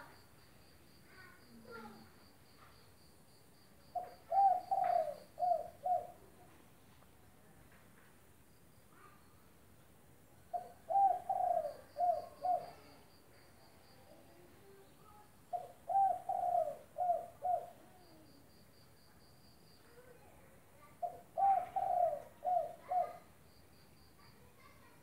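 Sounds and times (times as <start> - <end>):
dove cooing: 3.9 - 6.3, 10.5 - 13.0, 15.5 - 18.2, 21.0 - 23.3.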